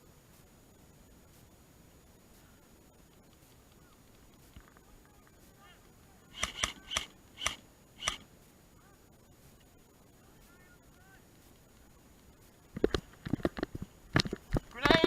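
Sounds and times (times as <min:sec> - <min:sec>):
airsoft gun shots: 0:06.4 - 0:08.2.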